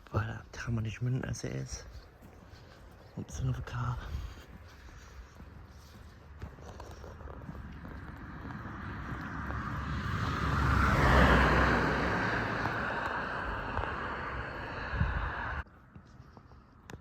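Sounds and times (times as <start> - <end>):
car driving past: 7.0 - 15.6.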